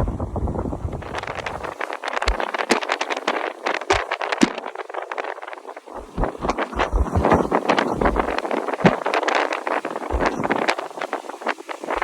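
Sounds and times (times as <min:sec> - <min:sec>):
wind blowing hard: 0:00.0 - 0:12.0
heavy thumps: 0:06.0 - 0:09.0, 0:10.1 - 0:10.6.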